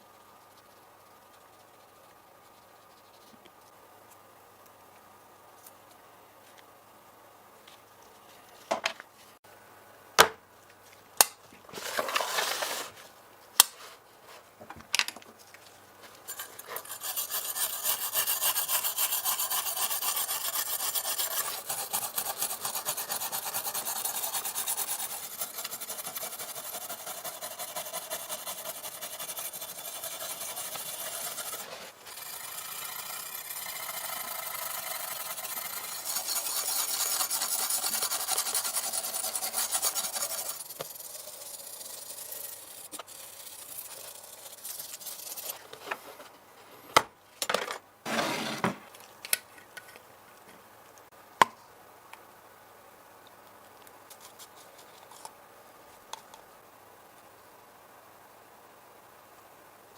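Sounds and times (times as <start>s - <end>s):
scrubbing metal: 16.3s - 45.6s
short rasp: 16.3s - 45.6s.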